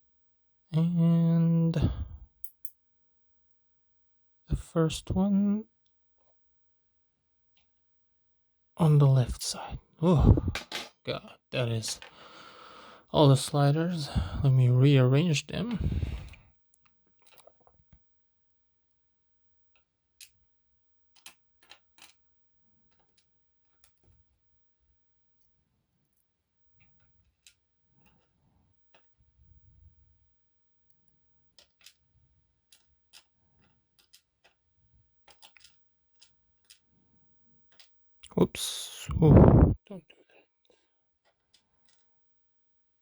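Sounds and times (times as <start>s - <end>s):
small metal clicks: 2.4s - 2.8s, 16.8s - 17.8s, 21.1s - 22.3s, 30.9s - 36.9s, 37.6s - 38.0s, 41.2s - 42.2s.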